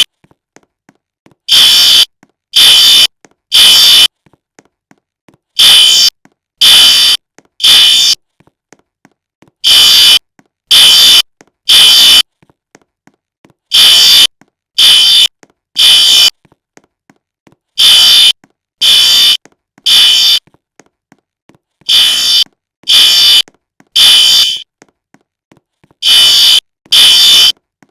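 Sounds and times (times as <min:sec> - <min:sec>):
fire alarm beeping: 0:01.5 - 0:04.1, 0:05.6 - 0:08.2, 0:09.6 - 0:12.2, 0:13.7 - 0:16.3, 0:17.8 - 0:20.4, 0:21.9 - 0:24.7, 0:26.0 - 0:27.5.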